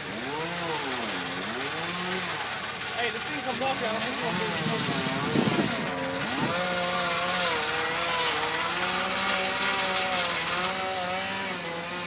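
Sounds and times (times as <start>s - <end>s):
chainsaw cutting tree trunk: 0.0s - 3.0s, 3.6s - 12.0s.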